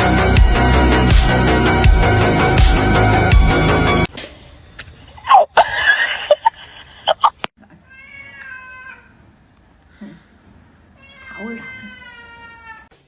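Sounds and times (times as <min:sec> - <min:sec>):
music: 0:00.0 - 0:04.1
cat meowing: 0:07.8 - 0:09.1, 0:11.0 - 0:12.9.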